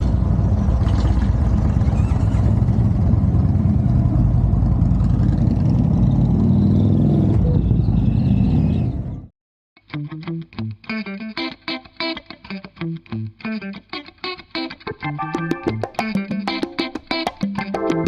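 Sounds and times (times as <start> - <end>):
motorcycle engine running: 0.0 - 6.6.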